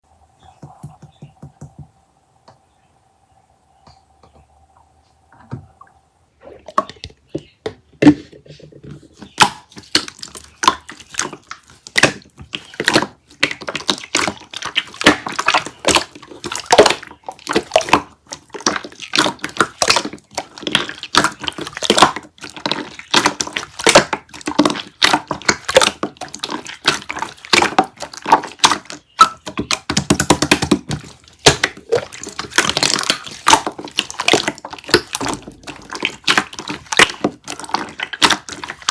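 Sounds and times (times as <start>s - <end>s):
slime squelching and popping: 9.1s - 38.9s.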